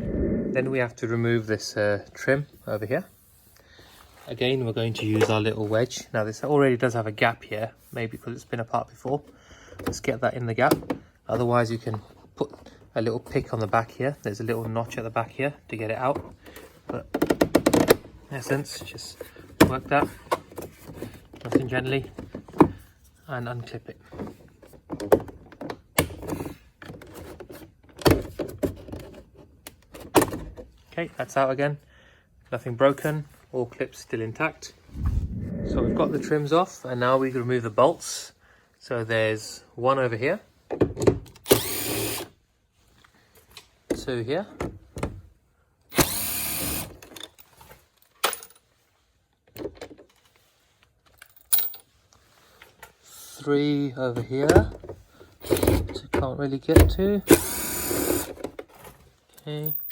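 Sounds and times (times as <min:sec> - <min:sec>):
cordless driver whine: 0:57.3 - 0:58.3.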